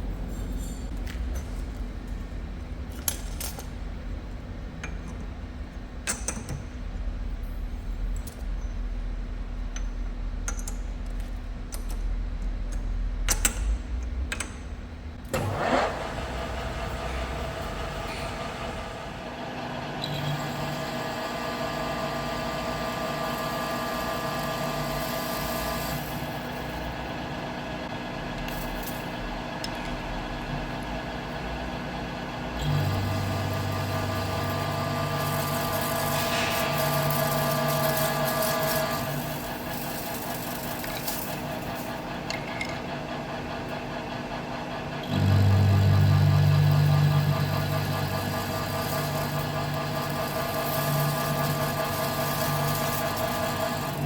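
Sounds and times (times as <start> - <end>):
machine hum with high whine: 0.0 - 54.0
machine tool rumble: 15.2 - 54.0.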